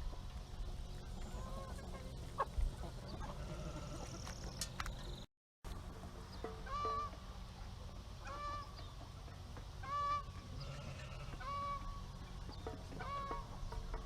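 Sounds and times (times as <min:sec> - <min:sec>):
poultry honking calls: 0:01.2 - 0:04.3, 0:06.6 - 0:07.2, 0:08.2 - 0:08.8, 0:09.8 - 0:12.1, 0:12.9 - 0:13.8.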